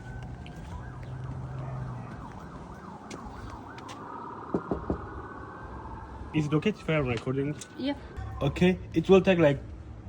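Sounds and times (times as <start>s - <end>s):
emergency vehicle siren: 0.0s - 9.2s
sharp knocks: 4.5s - 5.1s.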